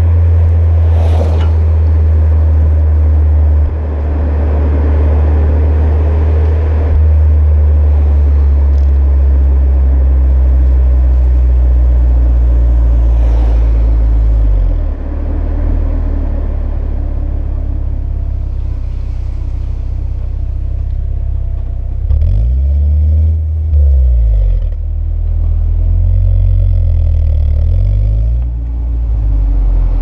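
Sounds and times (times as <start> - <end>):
car engine low exhaust drone: 0.0 - 30.0.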